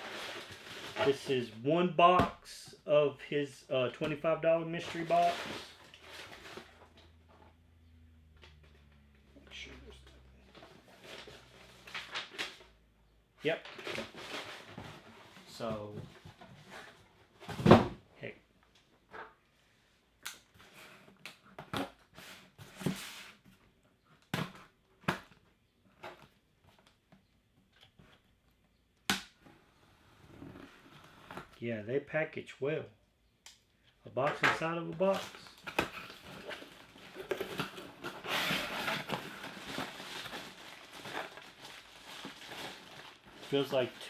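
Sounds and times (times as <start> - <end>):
cardboard rustling and scraping: 0.0 - 1.5, 4.7 - 7.4, 10.4 - 12.6, 13.5 - 18.0, 20.6 - 23.7, 29.5 - 31.6, 35.0 - 44.0.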